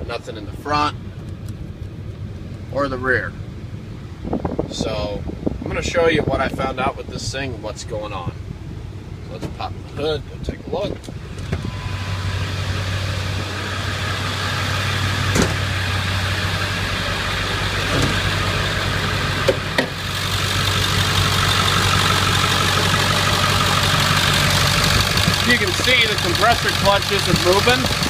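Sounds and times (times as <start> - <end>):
car engine idling: 11.1 - 28.0.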